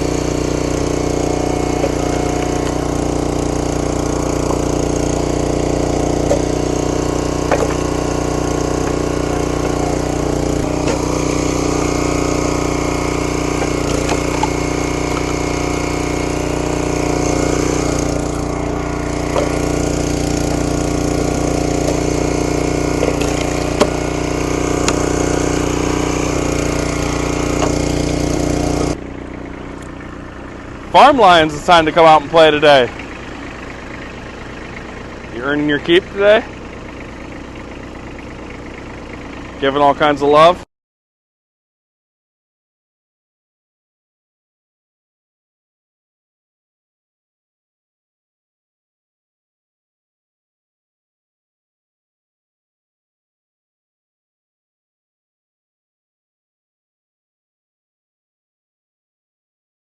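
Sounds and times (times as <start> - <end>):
log splitter engine running: 0.0 - 40.7
wood cracking and splitting: 0.2 - 29.0.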